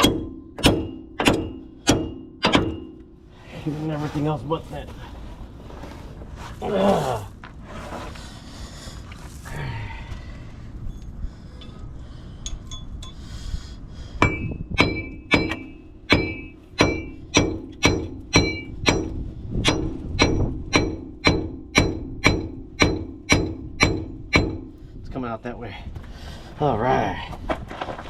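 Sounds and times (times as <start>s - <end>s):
sledgehammer striking metal: 0.0s - 3.2s, 14.2s - 24.8s.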